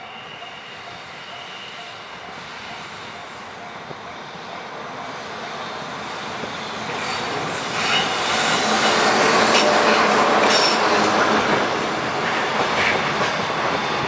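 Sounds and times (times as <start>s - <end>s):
freight train rumble: 0.0s - 14.0s.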